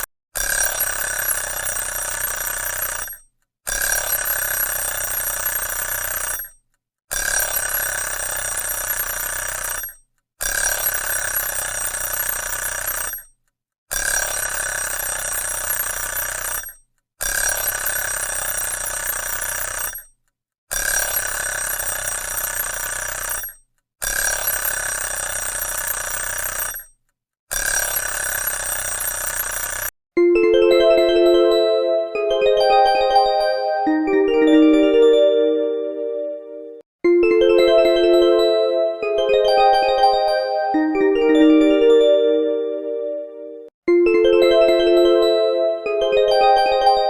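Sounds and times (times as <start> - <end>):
alarm clock ringing: 28.0 - 35.3, 37.4 - 43.4, 44.3 - 47.0.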